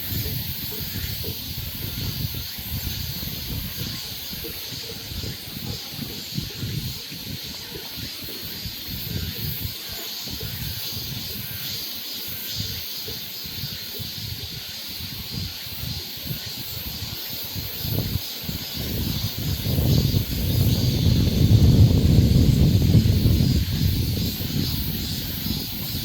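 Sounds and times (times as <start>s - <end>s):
forest hiss: 0.0s - 26.0s
wind gusting against microphone: 0.0s - 26.0s.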